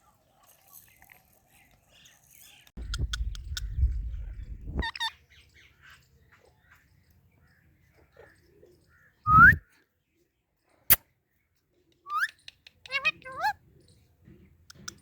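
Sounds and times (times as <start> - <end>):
low rumble: 2.8 - 4.8
rising whistled parrot call: 9.3 - 9.6
baby parrot chirping: 12.9 - 13.5.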